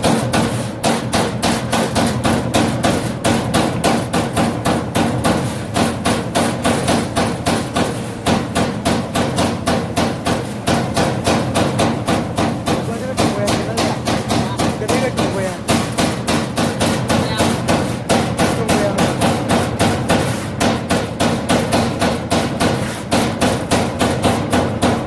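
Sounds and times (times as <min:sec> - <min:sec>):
punch press punching sheet metal: 0:00.0 - 0:25.0
steady machine hum: 0:00.0 - 0:25.0.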